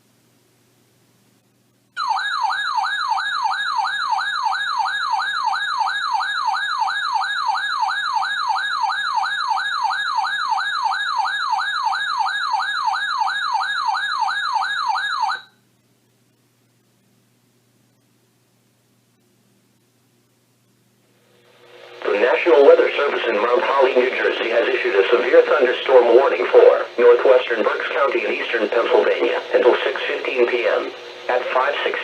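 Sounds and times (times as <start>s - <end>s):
warbling alert alarm: 2.0s - 15.5s.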